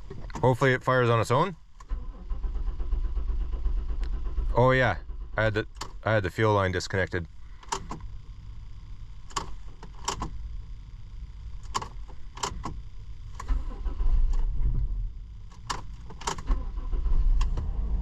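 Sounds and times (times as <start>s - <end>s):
car engine starting: 0.0s - 18.0s.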